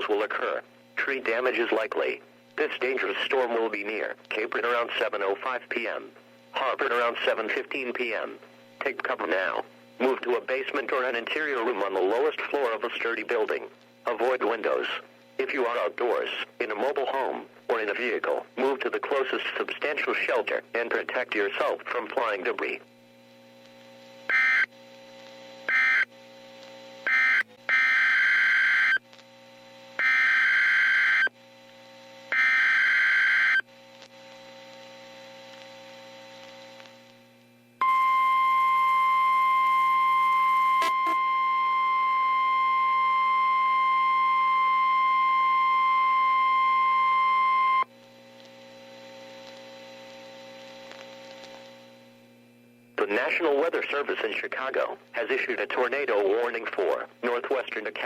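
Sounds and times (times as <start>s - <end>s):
faint radio hiss: 0.0s - 27.1s, 28.9s - 30.0s, 33.6s - 37.8s, 47.8s - 58.0s
data bursts: 24.3s - 24.7s, 25.7s - 26.1s, 27.1s - 29.0s, 37.8s - 47.9s
steady attention tone: 37.8s - 47.9s.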